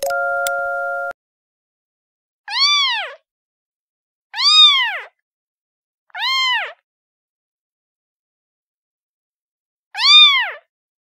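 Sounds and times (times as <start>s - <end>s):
kitten meowing: 2.5s - 3.2s, 4.4s - 5.1s, 6.2s - 6.8s, 10.0s - 10.6s.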